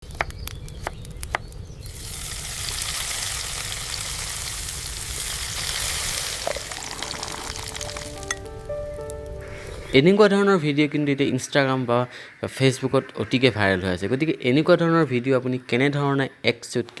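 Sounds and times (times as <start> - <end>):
food sizzling in a hot pan: 1.8 - 8.4.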